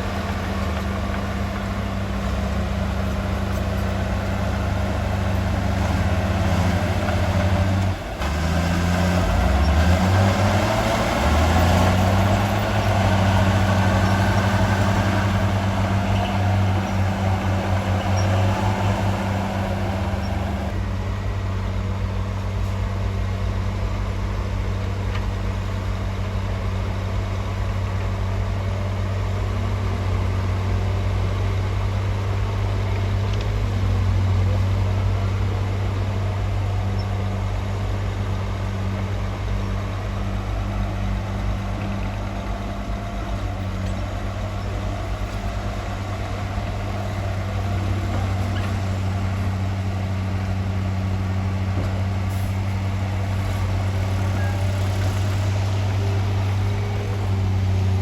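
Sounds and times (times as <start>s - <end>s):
heavy diesel engine revving: 0.0s - 22.3s, 37.4s - 58.0s.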